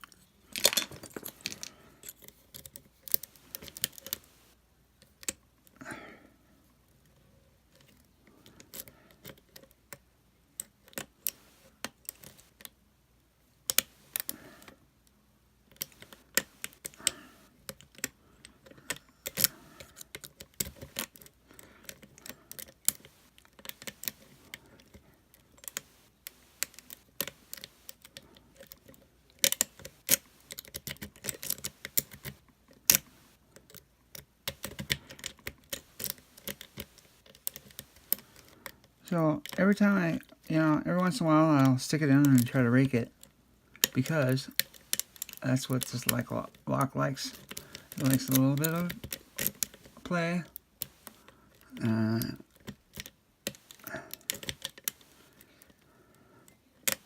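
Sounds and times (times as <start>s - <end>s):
lock picking metallic clicks: 15.7s - 38.6s, 43.2s - 46.3s, 47.3s - 50.1s, 52.4s - 55.1s, 56.4s - 57.0s.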